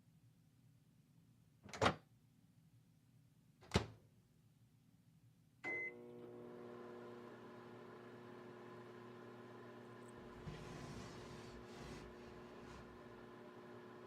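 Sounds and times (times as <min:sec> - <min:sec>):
microwave oven humming: 0:05.6 - 0:14.0.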